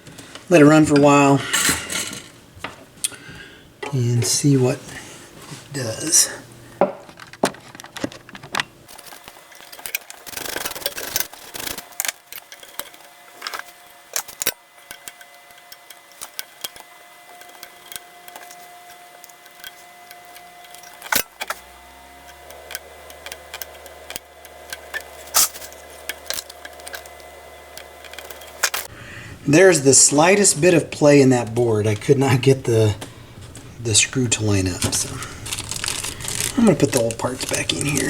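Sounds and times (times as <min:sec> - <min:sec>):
metallic clicks of screws and tools: 0:07.1 - 0:21.6, 0:22.2 - 0:28.9
low hum: 0:16.7 - 0:38.0.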